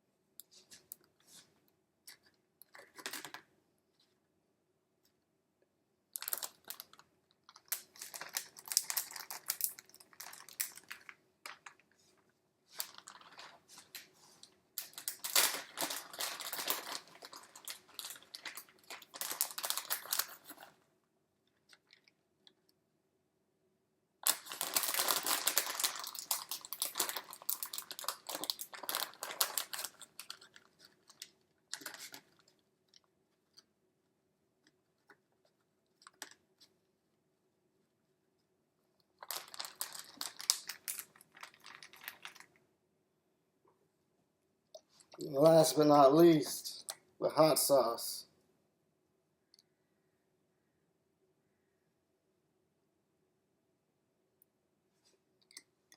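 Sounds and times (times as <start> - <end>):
hands crinkling and rustling: 0.4 - 4.2, 6.2 - 20.8, 21.5 - 22.7, 24.2 - 33.8, 34.6 - 36.8, 39.0 - 42.7.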